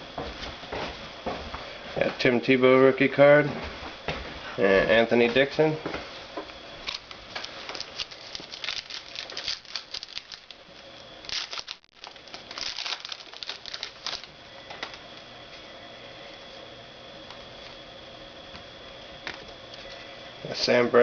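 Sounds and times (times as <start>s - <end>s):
faint steady hum: 0.0s - 21.0s
trading cards rustling and crinkling: 6.8s - 15.0s.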